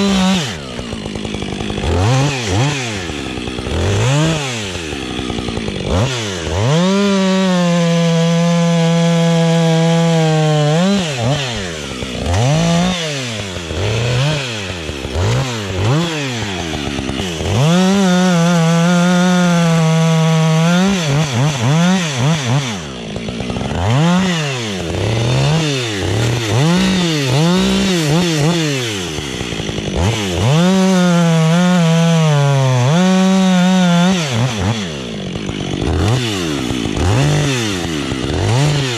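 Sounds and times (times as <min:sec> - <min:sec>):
chainsaw cutting wood: 0:00.0 - 0:38.9
chainsaw revving: 0:00.0 - 0:38.9.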